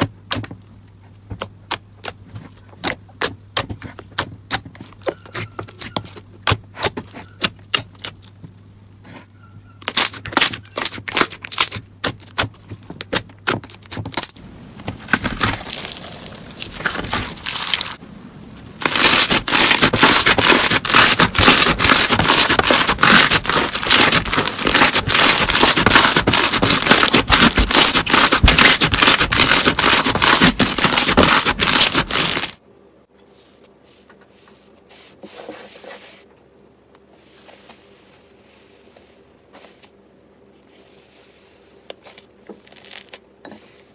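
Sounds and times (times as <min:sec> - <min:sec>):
slime crackling and popping: 0:15.0 - 0:18.0, 0:18.8 - 0:32.6.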